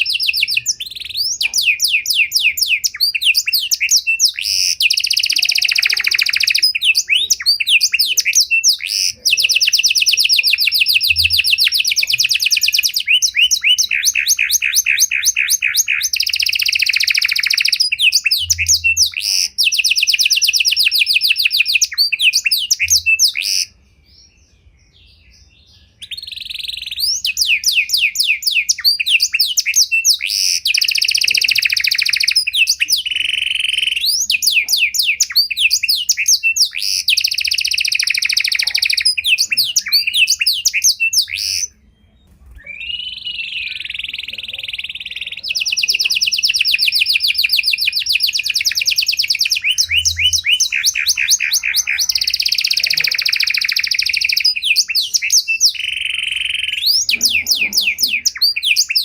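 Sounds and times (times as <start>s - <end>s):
canary singing trills: 0.0s - 59.0s.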